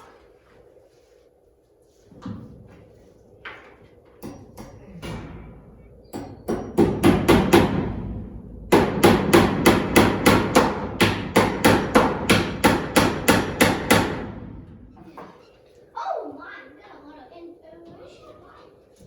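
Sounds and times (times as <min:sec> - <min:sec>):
hammer striking: 0:06.1 - 0:08.1, 0:08.7 - 0:14.4.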